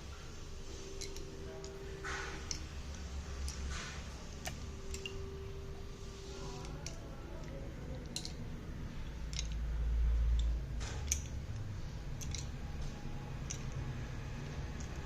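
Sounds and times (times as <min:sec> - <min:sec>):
pencils and packaging clicking: 0:06.3 - 0:08.4, 0:09.1 - 0:09.7, 0:10.3 - 0:13.8.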